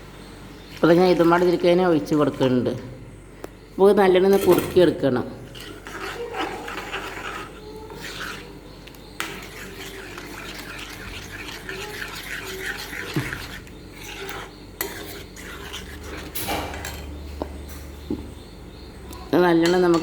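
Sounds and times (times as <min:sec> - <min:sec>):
spoon scraping a pan: 0:05.4 - 0:17.1.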